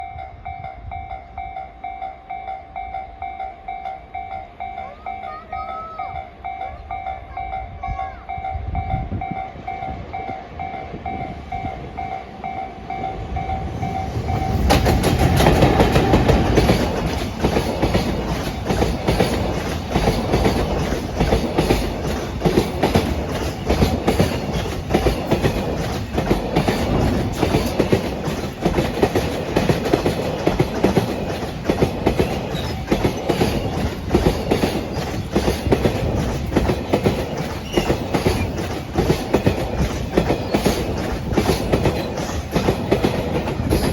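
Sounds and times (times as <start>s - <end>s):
level crossing warning bell: 0.0s - 29.8s
electric locomotive passing: 0.0s - 43.9s
train wheels clacking over rail joints: 12.9s - 43.9s.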